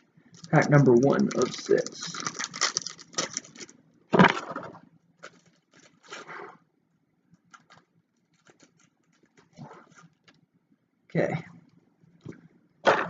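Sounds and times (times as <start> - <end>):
wrapper and cards crinkling: 0.3 - 3.8, 5.2 - 6.3, 7.5 - 10.4
foil pack ripping: 0.4 - 3.7, 5.2 - 6.4, 7.5 - 10.4.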